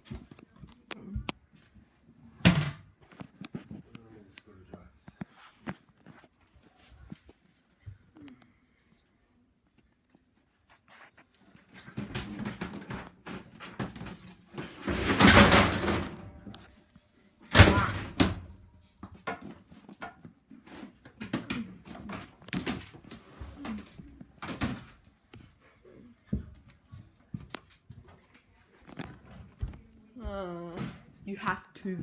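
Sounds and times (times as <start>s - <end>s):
objects knocking and clattering: 11.6s - 16.7s, 17.5s - 25.1s.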